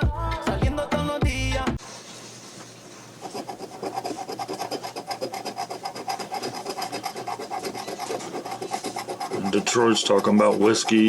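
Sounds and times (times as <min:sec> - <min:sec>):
lottery ticket being scratched: 0:03.2 - 0:11.0.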